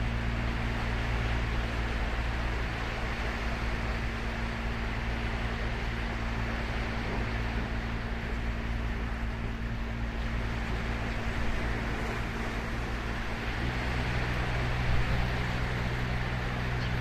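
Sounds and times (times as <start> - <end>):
low steady hum: 0.0 - 17.0
ocean waves breaking: 0.0 - 17.0.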